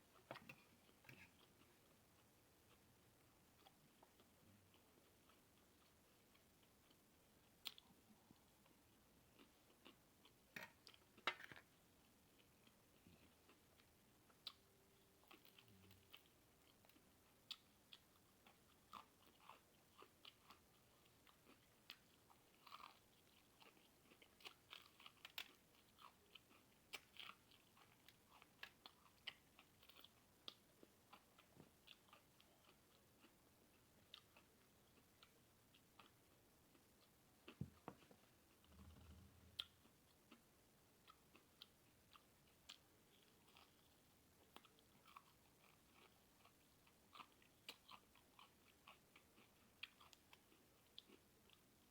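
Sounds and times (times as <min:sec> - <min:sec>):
person chewing and crunching food: 0:00.0 - 0:51.9.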